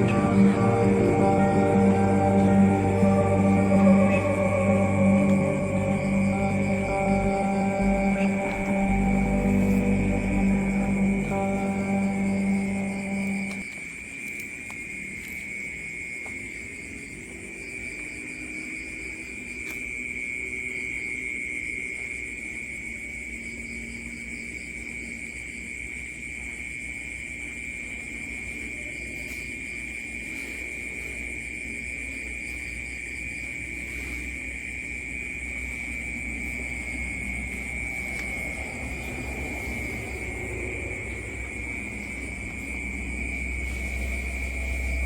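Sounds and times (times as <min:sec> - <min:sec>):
faint pulsing chirp: 0:00.0 - 0:13.6, 0:36.6 - 0:45.0
low rumbling drone: 0:00.0 - 0:13.6, 0:36.6 - 0:45.0
high insect drone: 0:00.0 - 0:45.0.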